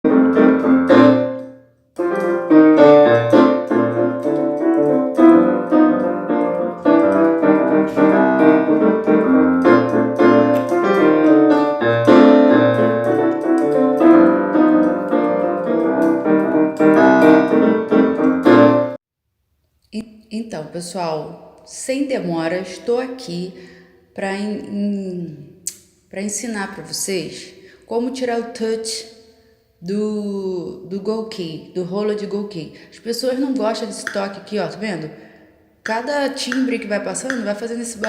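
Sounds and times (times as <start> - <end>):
electric piano chords: 0.0 - 19.0.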